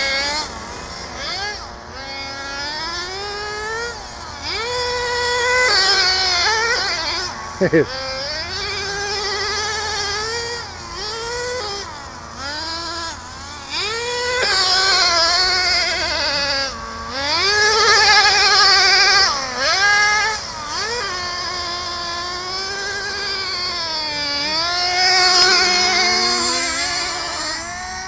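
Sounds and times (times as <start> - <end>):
rc car engine revving: 0.0 - 28.0.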